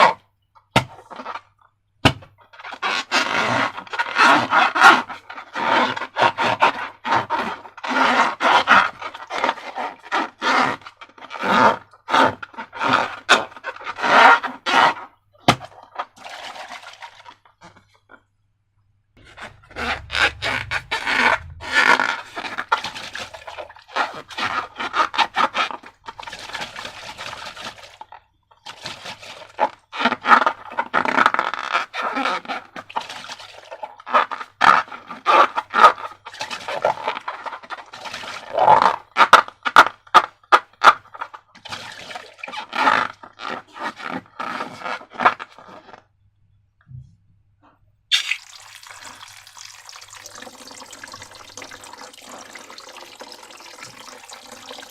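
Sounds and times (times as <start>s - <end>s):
slime mixed by hand: 0.8s - 18.4s, 19.2s - 46.0s, 48.1s - 54.9s
scraping against container: 19.2s - 28.1s, 48.1s - 54.9s.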